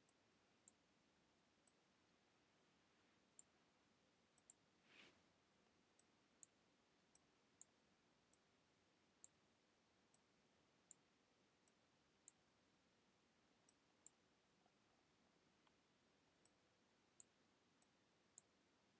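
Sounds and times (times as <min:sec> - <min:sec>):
faint room hiss: 0:00.0 - 0:18.9
computer mouse clicking: 0:04.4 - 0:04.6.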